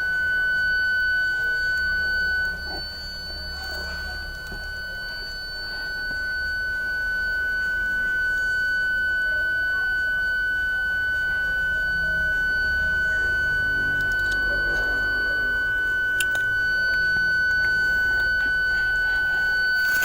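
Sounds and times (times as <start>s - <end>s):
parking sensor continuous tone: 0.0s - 20.0s.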